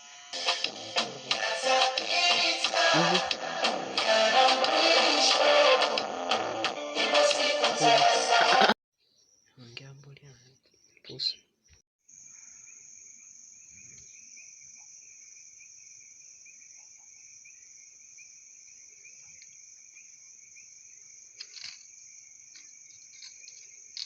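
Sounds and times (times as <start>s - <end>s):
crickets trilling: 9.2s - 24.0s.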